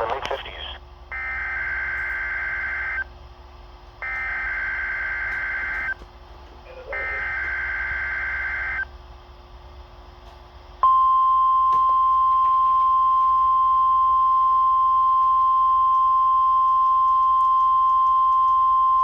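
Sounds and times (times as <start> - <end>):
loud steady alarm tone: 1.1 - 3.1, 4.0 - 6.0, 6.7 - 8.9.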